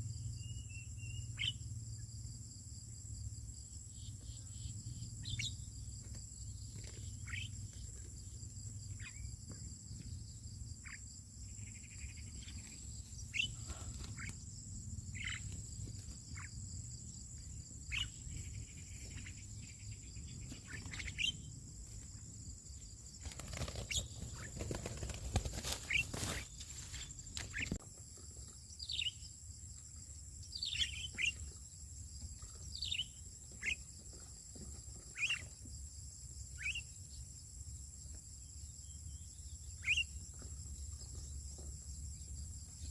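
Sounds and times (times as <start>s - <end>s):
high insect buzz: 0.0s - 27.8s
birds chirping: 0.1s - 1.7s, 3.9s - 27.8s, 28.7s - 29.4s, 30.2s - 34.2s, 35.0s - 35.6s, 38.8s - 42.9s
rustling: 24.4s - 27.8s.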